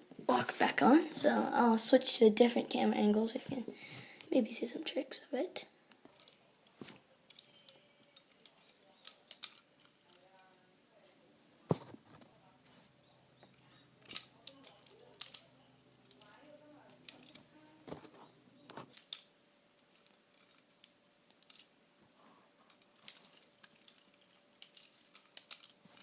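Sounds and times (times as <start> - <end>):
butterfly comb clicking: 7.3 - 10.6, 22.7 - 26.0.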